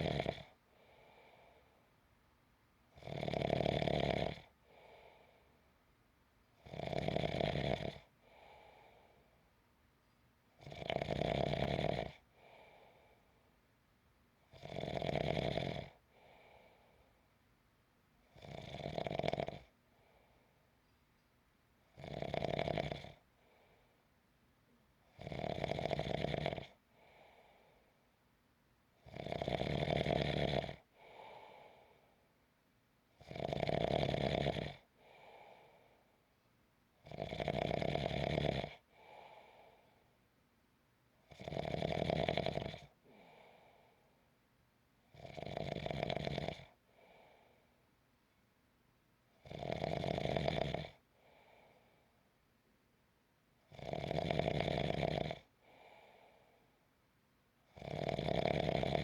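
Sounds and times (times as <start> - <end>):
person snoring: 0.0 - 0.6, 3.0 - 4.9, 6.7 - 8.1, 14.6 - 16.0, 22.0 - 23.2, 29.1 - 31.8, 33.2 - 34.8, 41.3 - 43.4, 45.2 - 46.8, 53.8 - 55.5, 57.8 - 59.0
soft breath out: 0.7 - 2.0, 4.6 - 5.7, 8.2 - 9.5, 12.3 - 13.6, 16.0 - 17.3, 26.9 - 28.1, 30.9 - 32.3, 35.0 - 36.2, 38.9 - 40.2, 43.0 - 44.3, 46.8 - 47.8, 51.1 - 52.3, 55.6 - 56.8.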